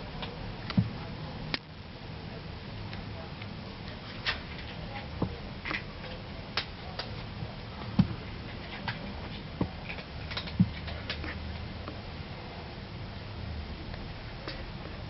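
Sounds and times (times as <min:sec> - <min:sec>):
short soft thumps: 0:07.9 - 0:08.2, 0:10.5 - 0:10.8.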